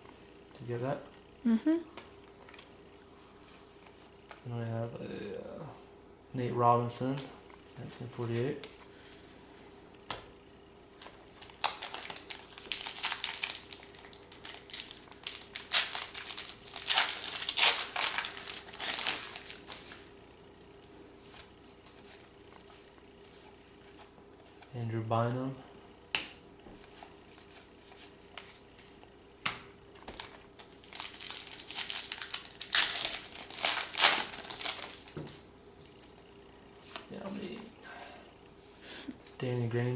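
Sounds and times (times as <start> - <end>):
wrapper crinkling: 11.3 - 20.1, 30.0 - 35.4.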